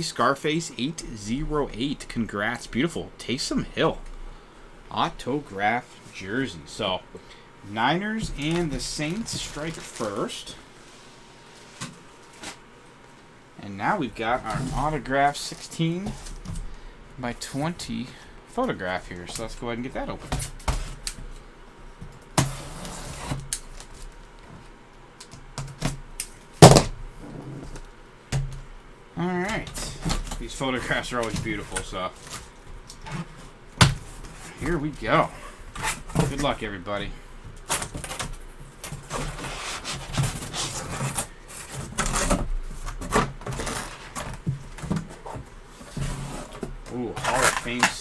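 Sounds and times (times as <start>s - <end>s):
packaging scraping rustle: 8.4s - 12.6s, 38.8s - 44.4s, 45.0s - 48.0s.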